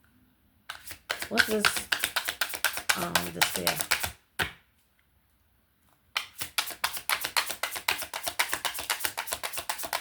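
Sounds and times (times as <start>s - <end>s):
cards being shuffled by hand: 0.7s - 4.2s, 6.2s - 10.0s.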